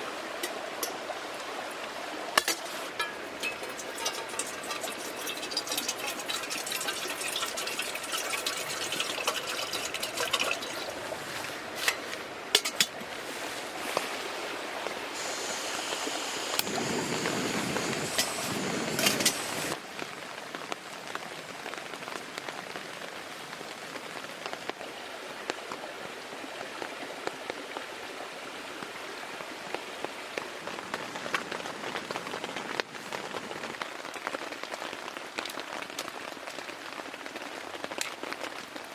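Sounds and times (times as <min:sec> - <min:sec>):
rain patter with dripping: 0:00.0 - 0:38.9
steady water noise: 0:00.0 - 0:38.9
water pouring or splashing: 0:02.3 - 0:14.4, 0:15.2 - 0:19.8.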